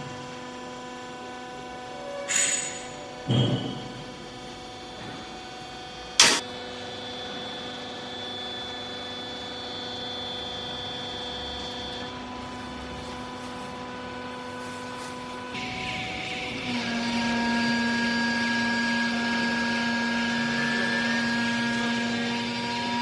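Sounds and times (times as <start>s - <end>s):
baler motor and pump humming: 2.8s - 6.4s
sharp metallic clank: 6.2s - 6.4s.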